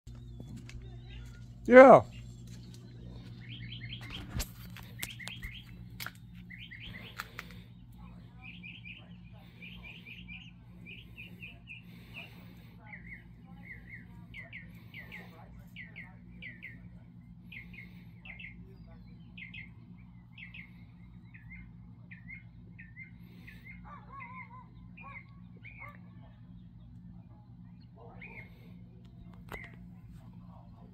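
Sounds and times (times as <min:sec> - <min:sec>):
air conditioner popping: 0:00.1 - 0:09.2
air conditioner humming: 0:00.1 - 0:30.9
birds chirping: 0:00.1 - 0:30.9.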